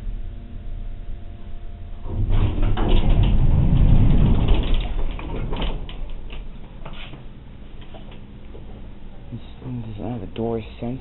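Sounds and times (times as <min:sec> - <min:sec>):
doors settling knocks: 0:02.0 - 0:07.2
elevator doors sliding: 0:02.0 - 0:08.9.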